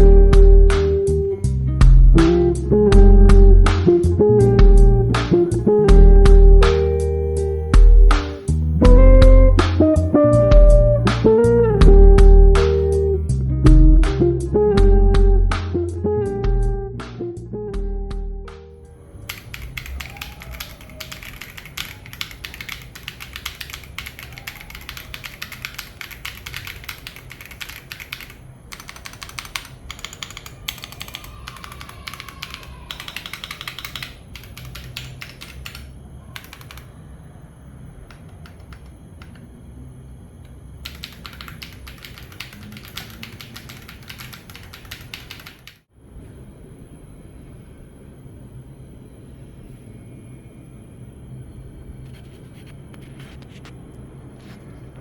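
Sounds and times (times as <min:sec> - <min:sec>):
mechanical keyboard typing: 0:19.2 - 0:36.9, 0:38.1 - 0:39.5, 0:40.8 - 0:45.9.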